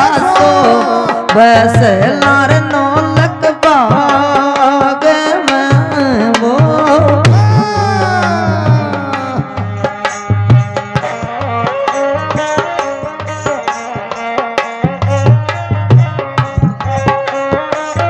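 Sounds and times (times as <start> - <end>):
fast hand-drum beat: 0.0 - 13.7, 14.5 - 18.0
sustained melody instrument: 7.2 - 14.7.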